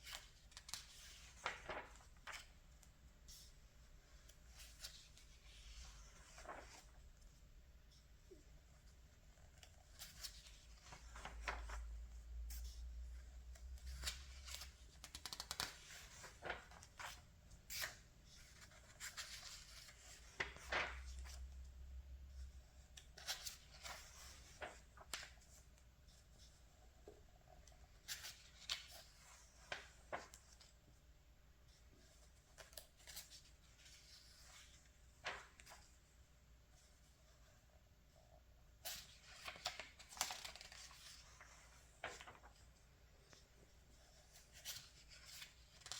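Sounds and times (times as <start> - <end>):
magazine pages rustling: 0.0 - 3.6, 4.2 - 7.2, 9.0 - 31.1, 31.7 - 37.0, 38.8 - 45.9.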